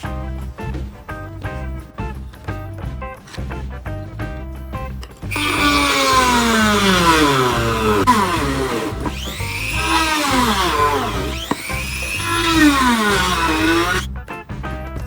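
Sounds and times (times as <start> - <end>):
background music: 0.0 - 15.0
power tool motor running under load: 5.3 - 14.1.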